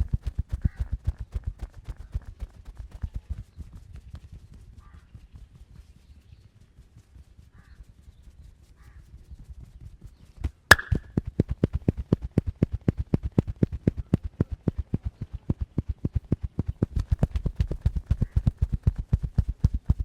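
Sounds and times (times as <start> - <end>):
slapping hand strikes: 10.7 - 11.0
sharp snap: 10.7 - 11.1.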